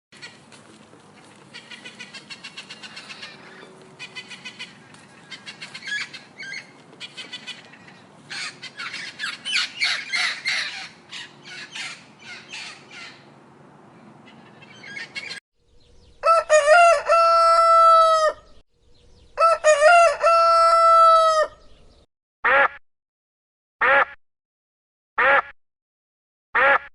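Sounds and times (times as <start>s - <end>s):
rooster crowing: 16.2s - 18.6s, 19.4s - 21.7s.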